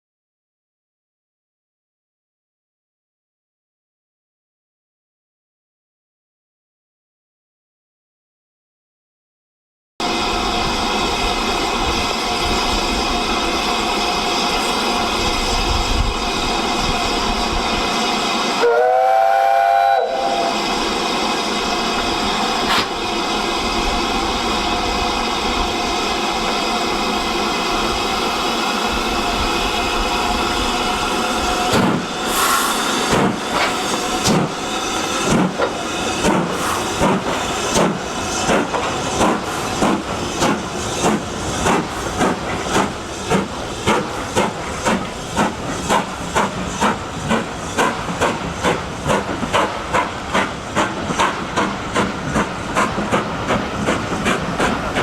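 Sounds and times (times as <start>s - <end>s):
steam hissing: 10.1s - 55.0s
steam whistle: 18.6s - 20.8s.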